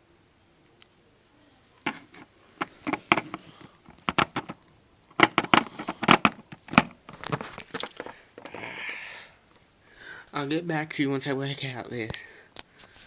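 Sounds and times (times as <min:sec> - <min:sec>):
hard clicks and knocks of parts: 0:01.9 - 0:08.5.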